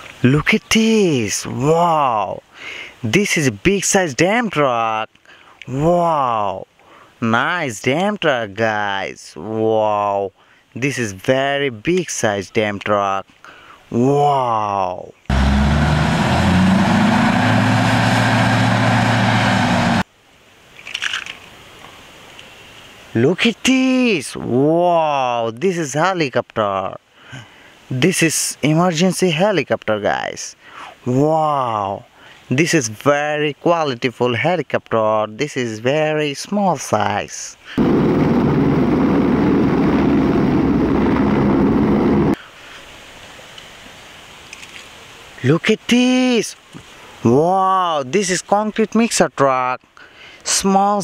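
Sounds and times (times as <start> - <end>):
harsh engine-like noise: 15.3 - 20.1, 37.8 - 42.4
helicopter engine and rotor: 37.8 - 42.4.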